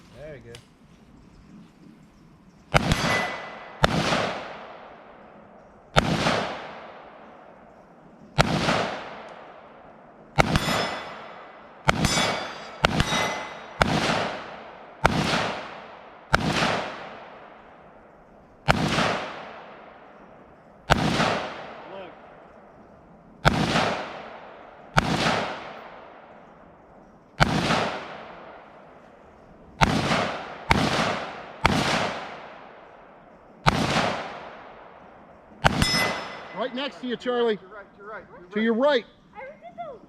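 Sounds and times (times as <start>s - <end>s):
metallic ring of steel targets: 2.7s - 3.8s, 10.4s - 13.9s, 35.6s - 37.2s
gunshots echoing: 2.7s - 38.2s.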